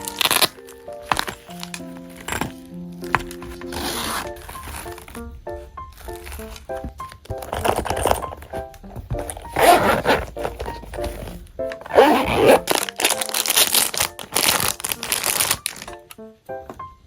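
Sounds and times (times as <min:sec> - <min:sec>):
packaging crinkling and tearing: 0:00.0 - 0:05.2, 0:06.0 - 0:16.0
soft music with plucked notes: 0:00.0 - 0:17.0.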